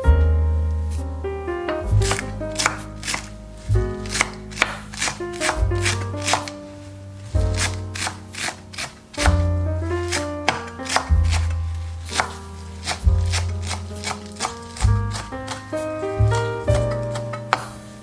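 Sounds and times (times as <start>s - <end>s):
soft piano music: 0.0s - 18.0s
knife chopping on cutting board: 2.0s - 3.3s, 4.1s - 6.6s, 7.4s - 9.5s, 10.1s - 15.7s.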